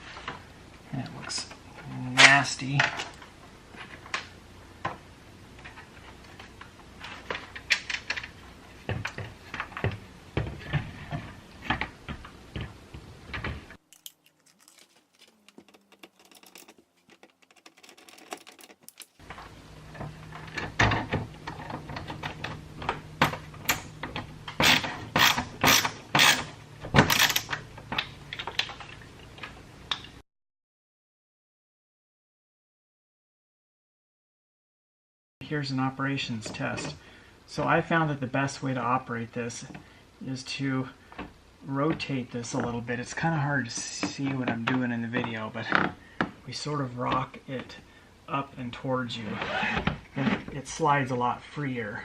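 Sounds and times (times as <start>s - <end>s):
clicks and knocks of hand work: 7.1s - 19.4s.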